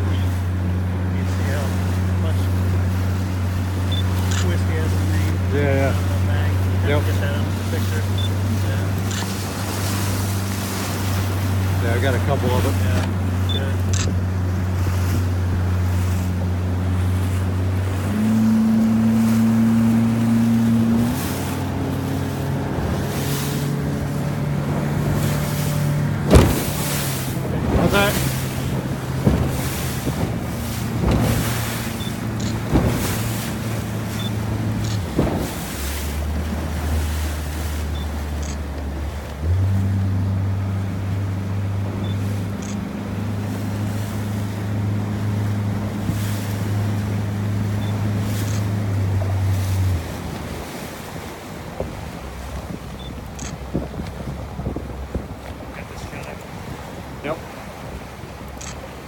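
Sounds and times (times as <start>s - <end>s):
motorboat engine: 0.0s - 59.0s
water noise: 0.0s - 59.0s
waves splashing against hull: 0.0s - 59.0s
wind: 0.0s - 59.0s
sharp thump: 26.2s - 28.3s, 29.2s - 33.6s.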